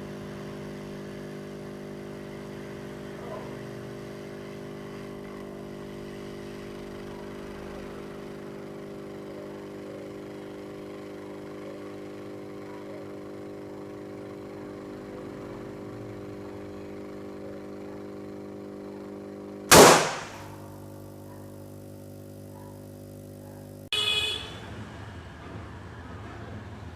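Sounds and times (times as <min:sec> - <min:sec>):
aquarium air pump humming: 0:00.0 - 0:26.9
sudden loud burst: 0:19.7 - 0:20.6.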